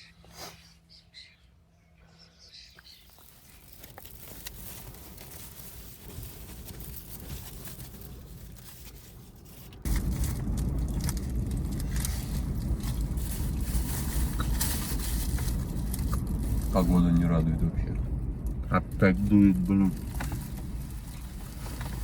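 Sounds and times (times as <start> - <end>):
wind buffeting microphone: 9.8 - 22.0.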